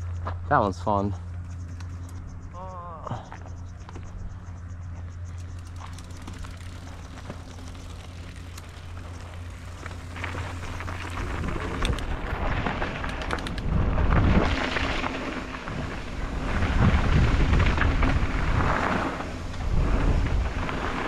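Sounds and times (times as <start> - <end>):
bike tyres rumbling: 0.0 - 21.0
bike rattling clicks: 1.4 - 2.3, 5.0 - 13.8
wind buffeting microphone: 5.6 - 21.0.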